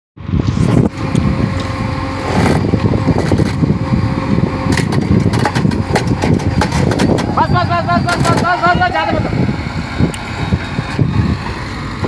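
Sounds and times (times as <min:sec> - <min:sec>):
train rumbling on rails: 0:00.2 - 0:12.0
rail clicks: 0:04.7 - 0:08.6.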